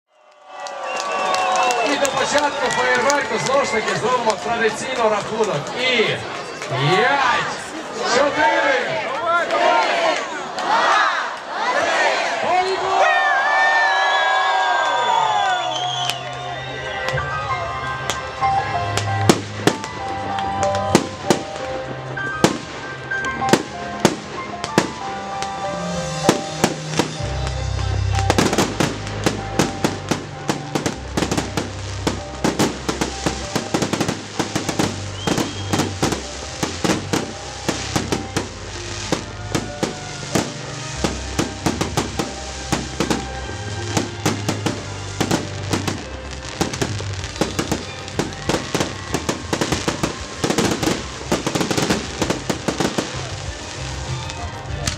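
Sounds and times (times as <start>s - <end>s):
fireworks banging and crackling: 17.0s - 54.9s.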